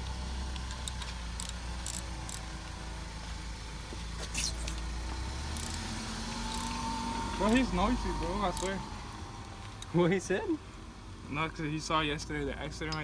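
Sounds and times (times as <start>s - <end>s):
car engine idling with misfire: 5.0s - 11.3s.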